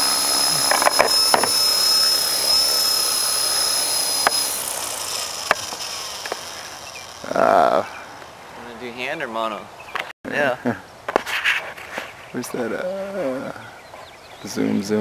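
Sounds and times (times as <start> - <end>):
model helicopter rotors whining: 0.0 - 8.9
sharp clicks: 5.2 - 7.2.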